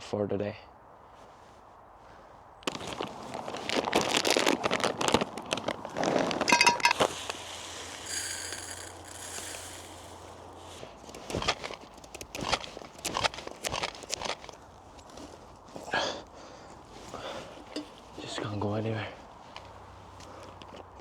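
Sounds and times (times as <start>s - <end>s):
rustling and clinking handling: 2.7s - 15.4s
quick rattle: 6.4s - 14.5s.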